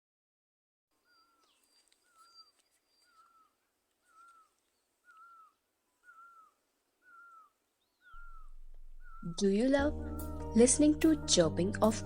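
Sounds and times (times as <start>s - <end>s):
high bird chirps: 1.0s - 10.5s
bird repeating short call: 1.2s - 9.6s.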